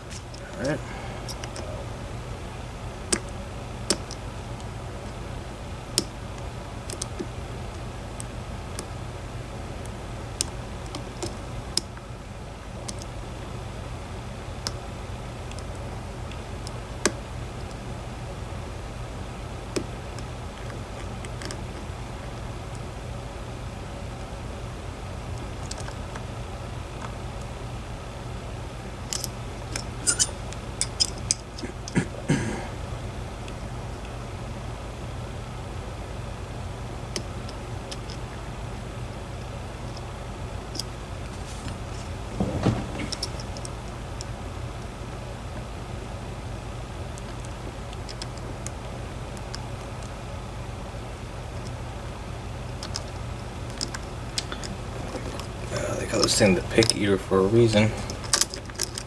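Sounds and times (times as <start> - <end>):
low background hum: 0.0 - 59.0
handling clatter: 29.1 - 32.0, 40.8 - 43.9, 57.6 - 59.0
lock pick clicks: 29.1 - 32.0.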